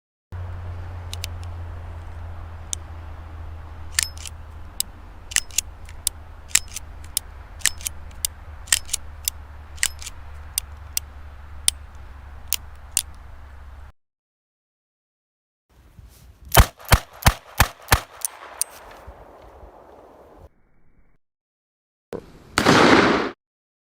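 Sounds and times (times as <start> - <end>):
steady low hum: 0.4 - 13.9
revolver action clicking: 1.0 - 2.9, 3.9 - 13.2, 16.5 - 18.8.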